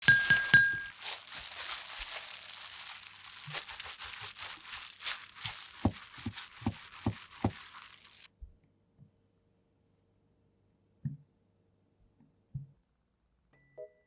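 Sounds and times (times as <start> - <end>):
dry rustling and crinkling: 0.0 - 8.3.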